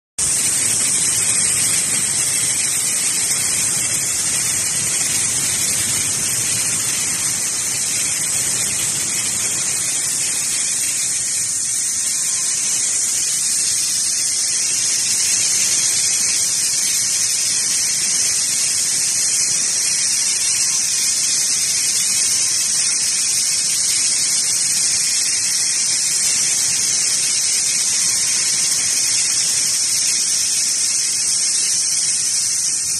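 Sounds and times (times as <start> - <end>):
band saw cutting metal rods: 0.2 - 23.1.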